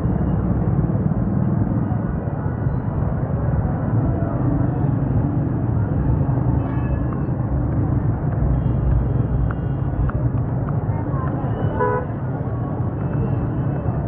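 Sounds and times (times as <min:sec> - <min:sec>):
passing traffic rumble: 0:00.0 - 0:14.0.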